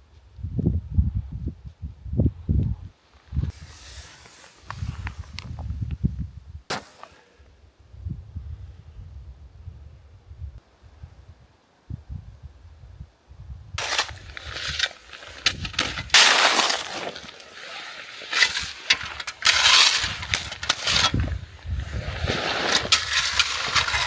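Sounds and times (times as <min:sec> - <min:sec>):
frozen snow crunching: 0:03.5 - 0:05.4, 0:13.8 - 0:24.0.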